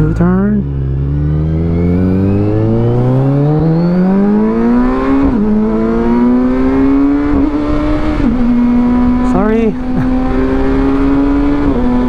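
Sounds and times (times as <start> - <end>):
motorcycle engine accelerating: 0.0 - 12.0.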